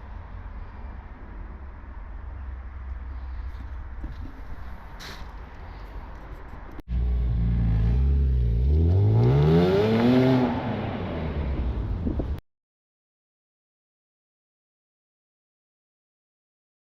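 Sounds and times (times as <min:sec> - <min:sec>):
car engine revving: 0:06.9 - 0:12.0.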